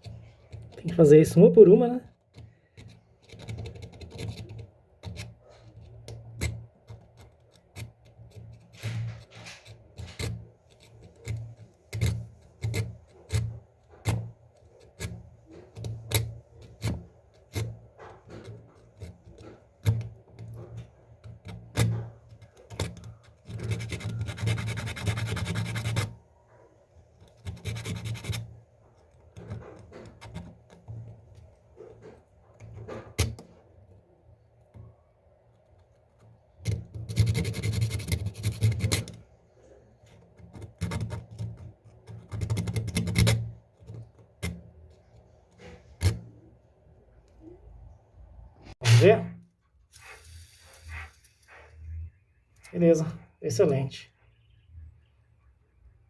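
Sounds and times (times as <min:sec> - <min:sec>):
sandpaper rubbing on metal gear: 0:50.0 - 0:51.7.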